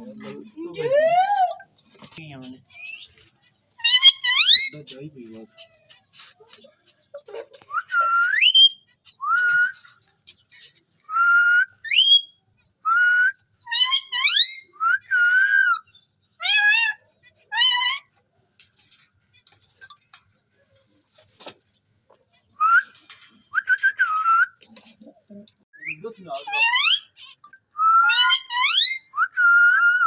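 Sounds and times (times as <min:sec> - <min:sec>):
harsh raspy parrot calls: 0:03.8 - 0:04.8, 0:26.3 - 0:29.1
parrot whistling: 0:07.7 - 0:09.7.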